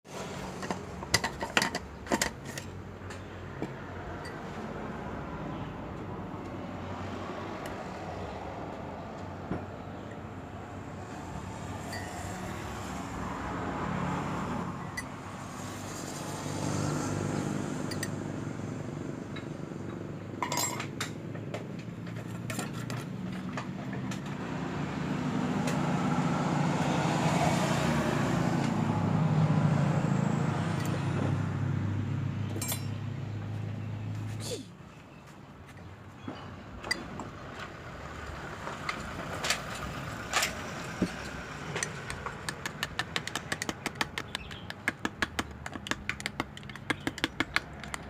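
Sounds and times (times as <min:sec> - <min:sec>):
spoon clinking against glass: 0:20.4 - 0:20.8, 0:32.6 - 0:33.0.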